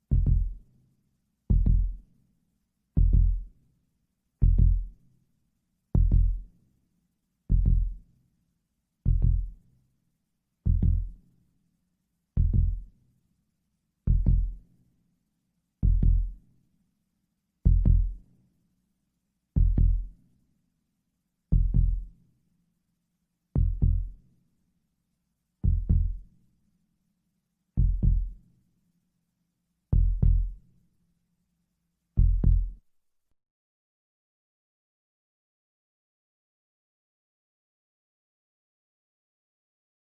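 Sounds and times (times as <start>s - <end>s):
deep heartbeat thumps: 23.6s - 24.1s, 25.7s - 26.2s, 27.8s - 28.3s, 30.0s - 30.6s, 32.2s - 32.7s.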